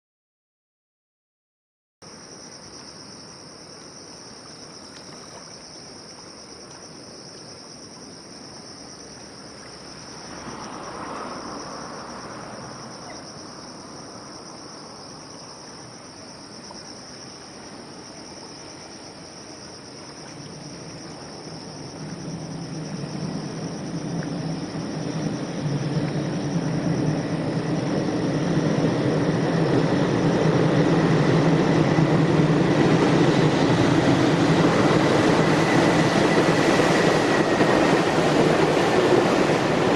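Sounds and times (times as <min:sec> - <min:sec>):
insects chirring: 0:02.0 - 0:39.9
freight train rumble: 0:21.8 - 0:39.9.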